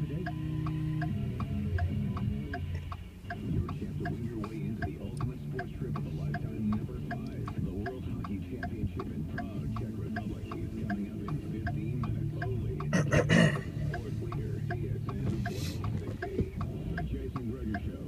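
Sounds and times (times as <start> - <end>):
road and engine noise: 0.0 - 18.0
turn signal clicking: 0.0 - 18.0.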